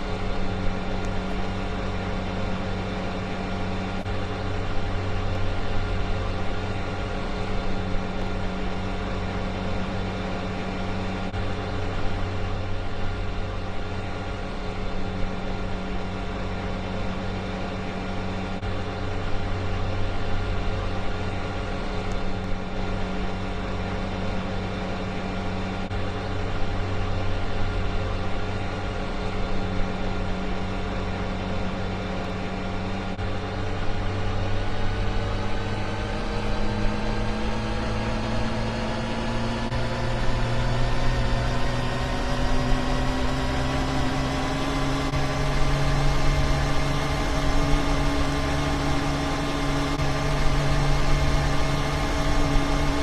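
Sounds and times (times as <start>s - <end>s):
low hum: 0.0s - 53.0s
washing machine motor whine: 25.9s - 53.0s.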